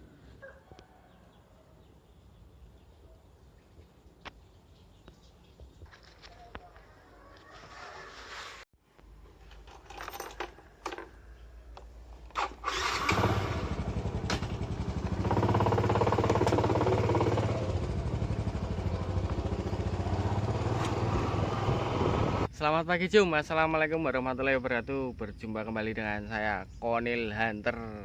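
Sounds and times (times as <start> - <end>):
small engine running: 12.7 - 22.5.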